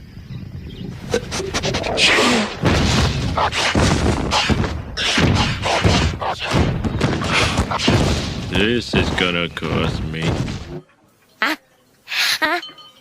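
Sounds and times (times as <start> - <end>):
cartoon thumps and crashes: 1.1 - 10.8.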